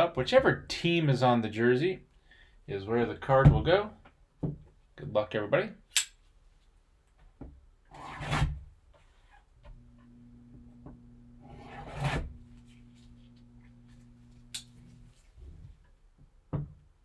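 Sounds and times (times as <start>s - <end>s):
low steady hum: 9.7s - 15.8s
cardboard rubbing and scraping: 11.5s - 13.2s.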